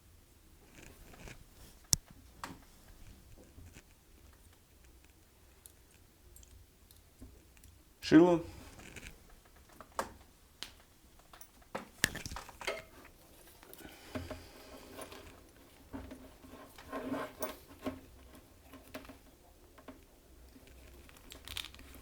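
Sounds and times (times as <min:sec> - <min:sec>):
awl scraping and rubbing: 0:00.7 - 0:03.9, 0:11.9 - 0:19.0.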